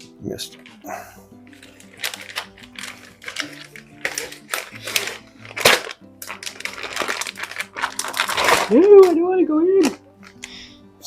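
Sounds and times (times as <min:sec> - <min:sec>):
background music with held notes: 0:00.0 - 0:11.0.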